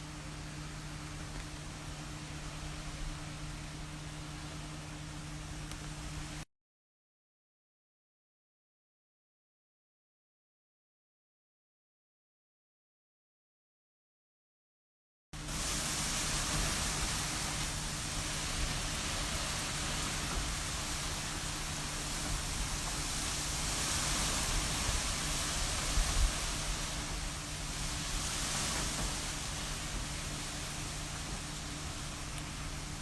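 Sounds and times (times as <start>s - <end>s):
wind and rain rushing: 0.0s - 6.4s, 15.4s - 33.0s
wind buffeting microphone: 15.5s - 33.0s.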